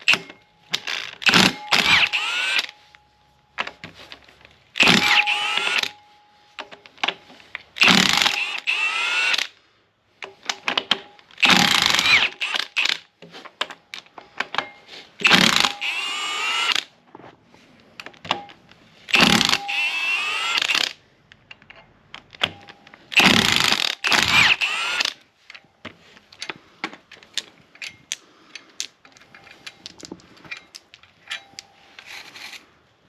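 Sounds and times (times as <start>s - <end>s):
power tool spinning up: 0.9s - 2.7s, 4.8s - 5.9s, 15.2s - 16.9s, 19.1s - 20.9s, 23.2s - 25.2s.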